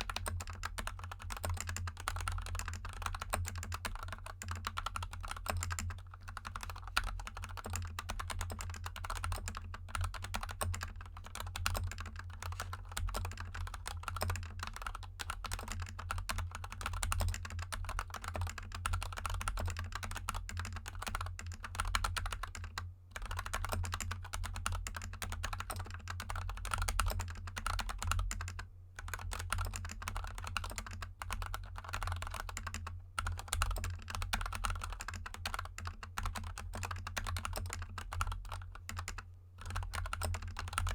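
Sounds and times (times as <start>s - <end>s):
fast typing on mechanical keyboard: 0.0s - 40.9s.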